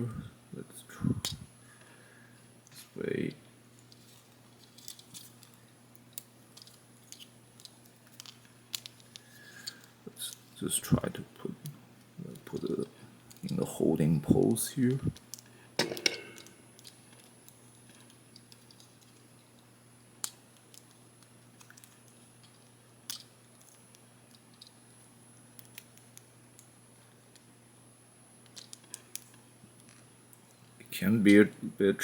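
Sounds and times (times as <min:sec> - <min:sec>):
faint steady hum: 0:00.0 - 0:32.0.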